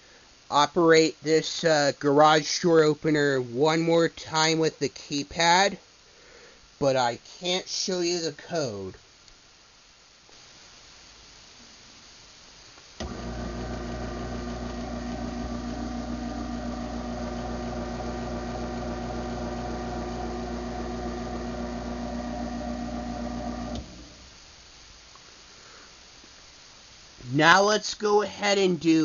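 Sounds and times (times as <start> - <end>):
garage door opener motor humming: 13.0 - 24.2.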